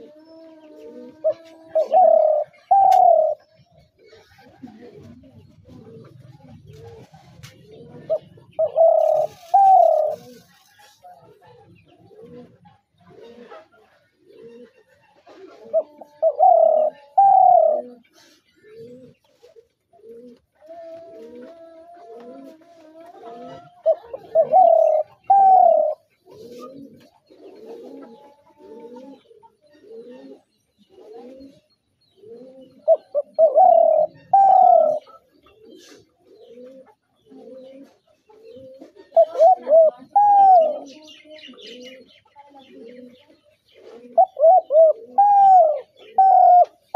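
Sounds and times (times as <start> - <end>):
dove cooing: 0.0 - 46.9
faint low cooing: 0.0 - 46.9.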